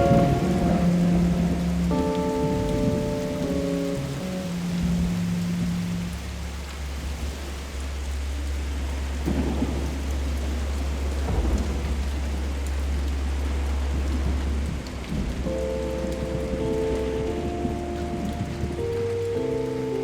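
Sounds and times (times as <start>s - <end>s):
electric piano notes: 0.0s - 6.6s, 15.4s - 20.0s
low rumble of thunder: 0.0s - 20.0s
steady rain falling: 0.0s - 20.0s.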